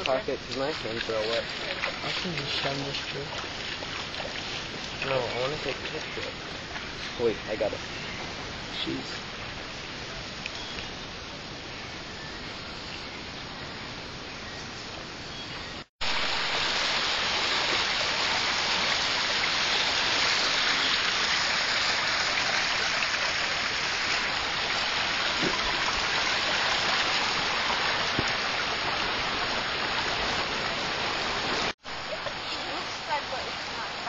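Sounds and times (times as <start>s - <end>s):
loud rush of water: 0.0s - 10.4s, 16.0s - 34.0s.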